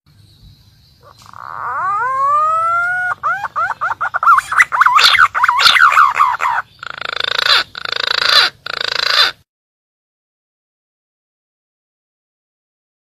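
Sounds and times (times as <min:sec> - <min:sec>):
pigeon harsh rasping notes: 0:01.1 - 0:09.4.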